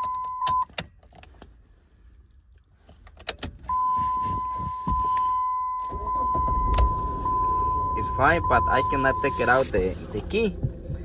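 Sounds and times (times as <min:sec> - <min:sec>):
car electronic warning tone: 0:03.7 - 0:09.7.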